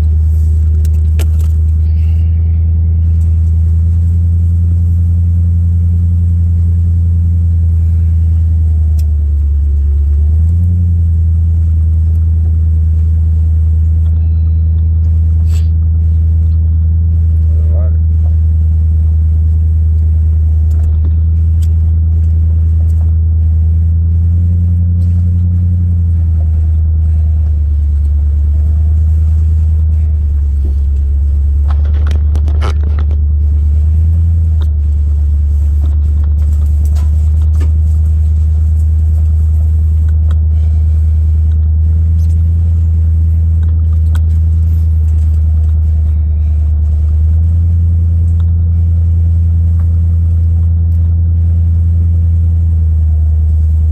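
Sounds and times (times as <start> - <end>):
vehicle engine droning: 0.0 - 53.9.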